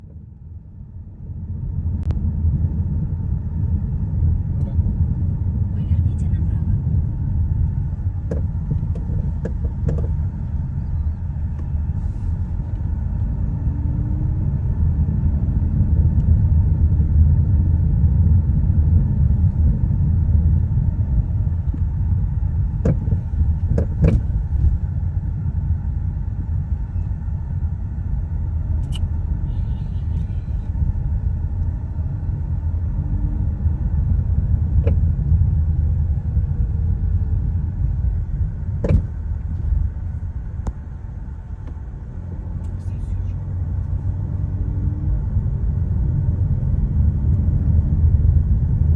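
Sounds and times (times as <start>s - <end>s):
car road rumble: 0.0s - 48.9s
suspension knocks: 8.2s - 10.3s, 22.7s - 24.8s, 38.7s - 39.7s.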